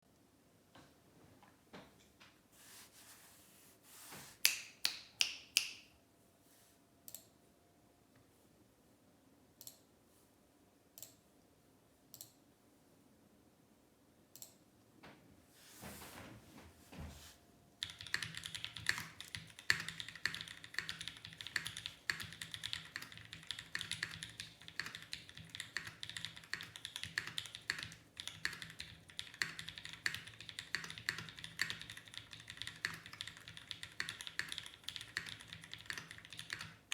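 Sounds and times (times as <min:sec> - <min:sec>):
mechanical keyboard typing: 0:17.8 - 0:36.9.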